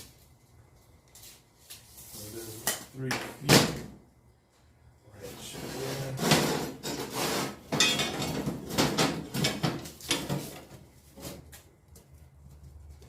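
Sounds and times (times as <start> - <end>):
metal tools clinking and scraping: 5.4 - 10.6.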